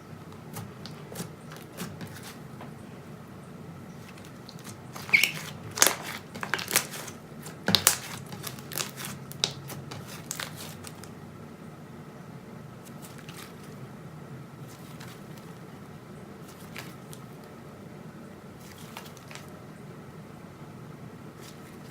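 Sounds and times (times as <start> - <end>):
low steady hum: 0.0 - 21.9
slime squishing with sticky pops: 0.4 - 2.4, 4.1 - 11.1.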